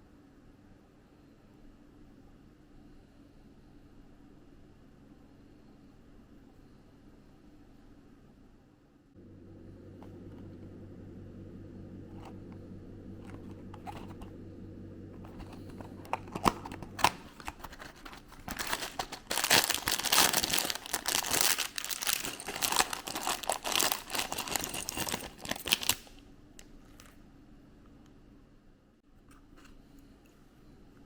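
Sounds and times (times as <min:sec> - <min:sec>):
packaging crinkling and tearing: 0:15.4 - 0:26.2.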